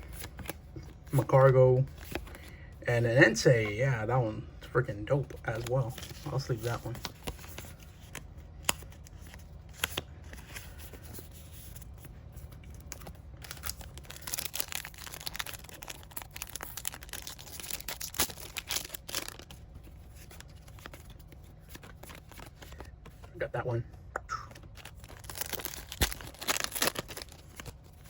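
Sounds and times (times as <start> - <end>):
plastic and foil wrappers crinkling: 5.4 - 23.0, 24.5 - 28.0.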